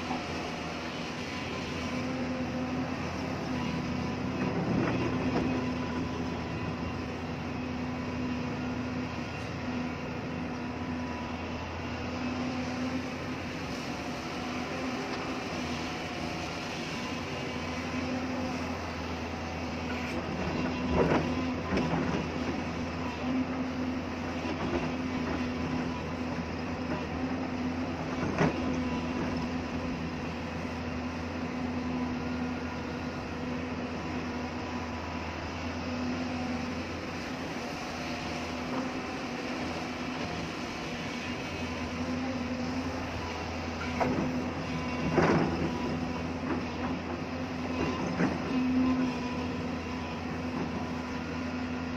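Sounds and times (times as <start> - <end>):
excavator diesel engine running: 0.0 - 51.9.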